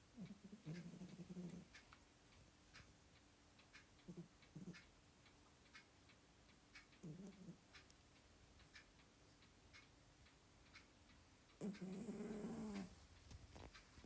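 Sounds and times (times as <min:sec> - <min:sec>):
clock ticking: 0:00.0 - 0:14.0
cat snoring softly: 0:00.2 - 0:01.8, 0:07.0 - 0:07.6, 0:11.6 - 0:13.0.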